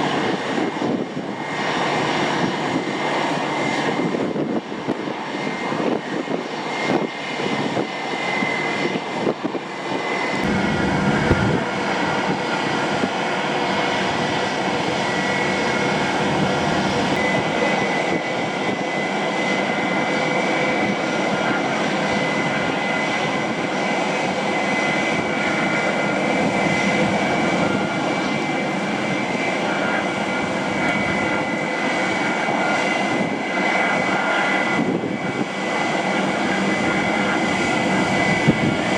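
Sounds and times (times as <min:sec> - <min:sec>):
airliner engines whining: 0:00.0 - 0:38.9
brief low rumble: 0:10.4 - 0:11.6.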